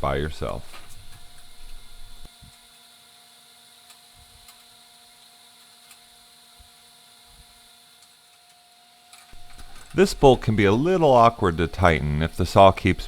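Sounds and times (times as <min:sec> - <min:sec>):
faint electrical hum: 0:00.0 - 0:13.0.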